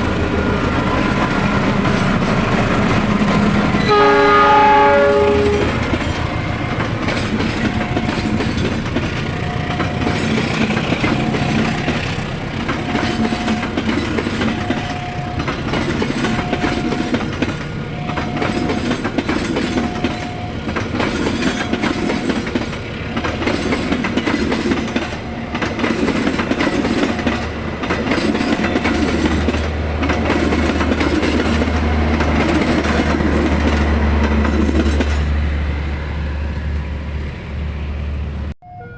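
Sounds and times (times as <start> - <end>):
level-crossing warning bell: 3.1 - 27.4, 38.6 - 38.9
train horn: 3.8 - 5.9
train wheels clicking over rail joints: 5.4 - 35.4.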